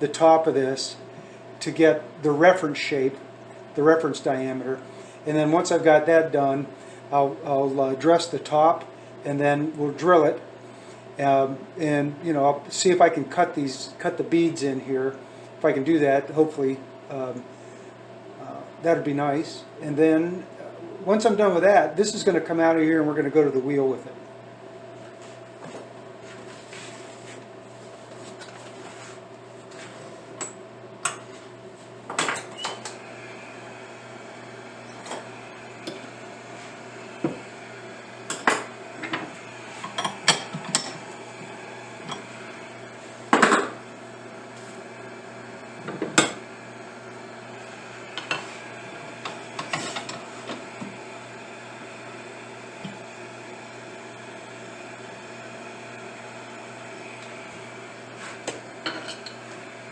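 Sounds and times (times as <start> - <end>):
lathe machine hum: 32.8 - 59.9.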